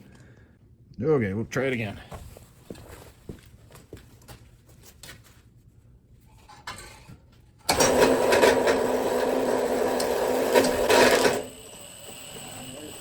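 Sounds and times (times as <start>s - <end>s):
electric drill running: 7.7s - 13.0s.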